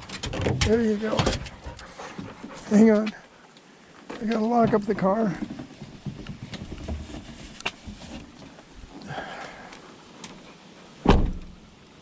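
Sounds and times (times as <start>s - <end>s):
light clicks and rustles: 0.0s - 10.6s
car door shutting: 11.0s - 11.6s.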